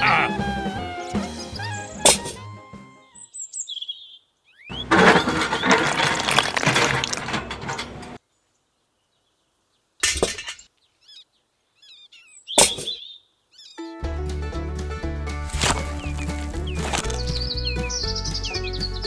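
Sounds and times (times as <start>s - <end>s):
music: 0.0s - 3.1s, 13.9s - 19.0s.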